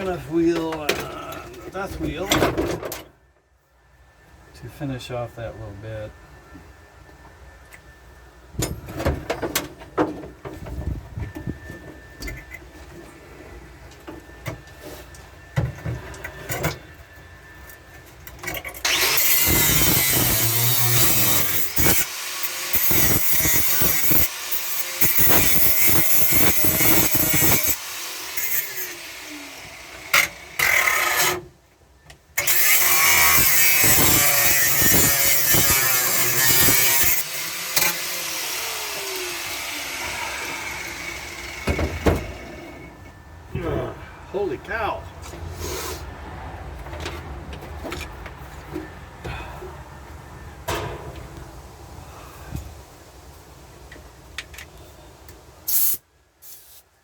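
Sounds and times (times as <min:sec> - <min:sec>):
angle grinder on steel: 0:18.8 - 0:31.4, 0:32.4 - 0:42.9.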